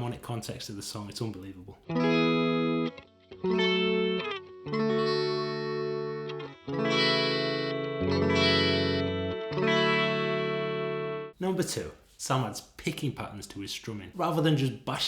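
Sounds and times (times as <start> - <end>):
guitar strumming open chords: 1.8 - 11.4.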